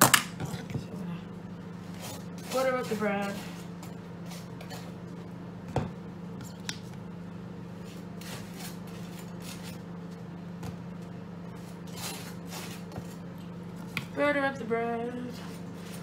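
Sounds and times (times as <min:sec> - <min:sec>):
microwave oven humming: 0:00.0 - 0:16.0
knife scraping on bread: 0:04.2 - 0:05.0, 0:07.8 - 0:09.9, 0:11.6 - 0:13.3.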